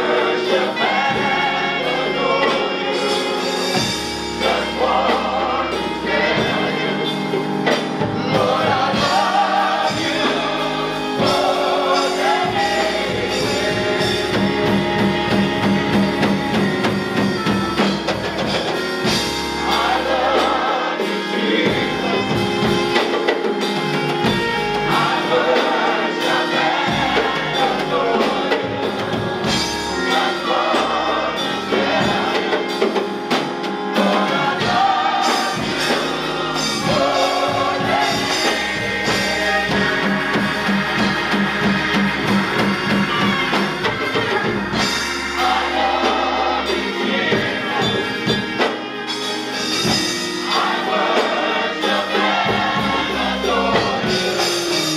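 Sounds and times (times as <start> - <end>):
steady bass line: 0.0 - 20.8, 23.7 - 54.9
gospel choir singing: 0.0 - 54.9
instrumental accompaniment: 0.0 - 54.9.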